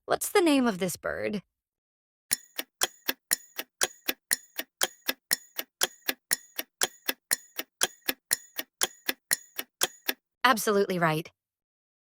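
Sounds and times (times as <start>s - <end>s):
clock ticking: 2.3s - 10.2s.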